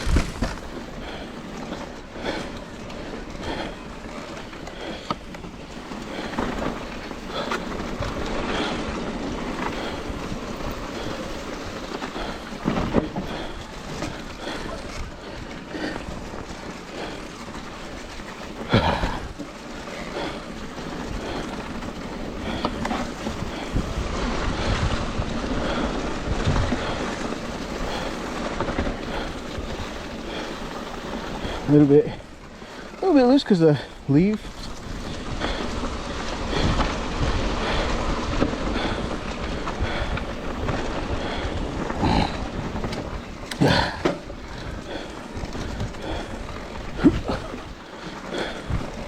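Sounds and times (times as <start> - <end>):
wind noise on microphone: 0.0 - 0.9, 22.4 - 30.2
bicycle tyres on dirt trail: 0.0 - 49.0
bike knocking and rattling: 0.0 - 49.0
wind buffeting microphone: 0.0 - 49.0.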